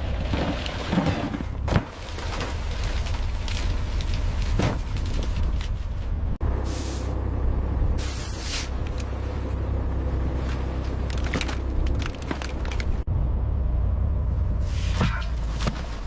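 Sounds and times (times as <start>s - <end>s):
boat engine rumbling: 0.0s - 16.0s
knocks and clatter of gear: 10.4s - 13.1s.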